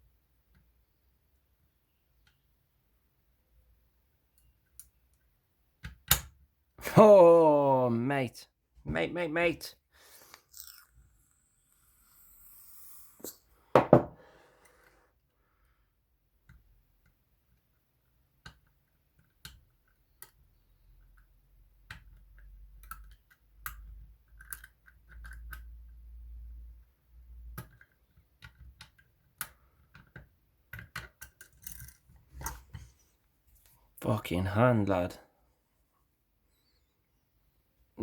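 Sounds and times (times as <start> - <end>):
loud knock: 13.8 - 14.2.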